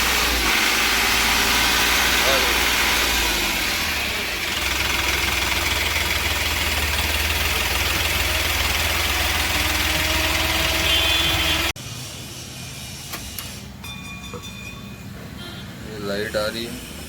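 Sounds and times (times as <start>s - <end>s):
diesel engine idling: 0.0s - 11.8s.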